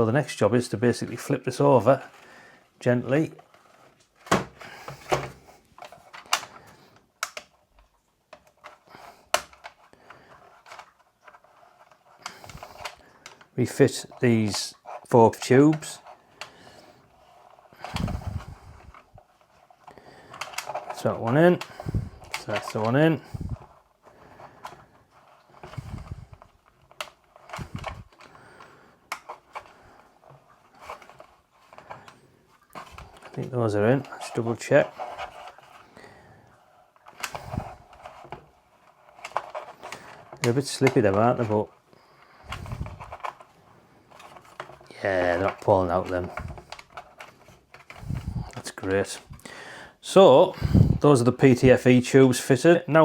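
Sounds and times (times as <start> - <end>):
plastic tubes clicking into connectors: 7.2 - 7.5, 8.3 - 9.9, 17.8 - 19.0, 20.3 - 23.6, 25.6 - 29.7.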